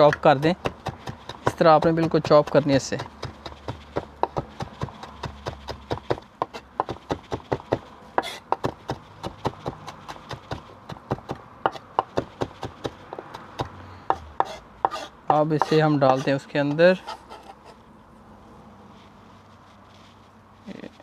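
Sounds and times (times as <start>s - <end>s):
knife chopping on cutting board: 0.0s - 16.3s.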